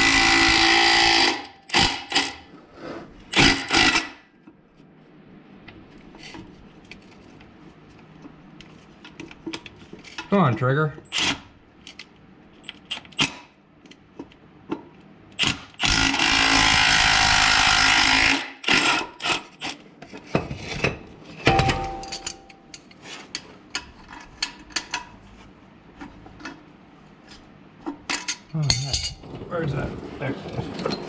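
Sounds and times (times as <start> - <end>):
tools clinking on metal: 21.4 - 23.0, 28.1 - 29.2
heavy metallic knock with ring: 21.5 - 22.7.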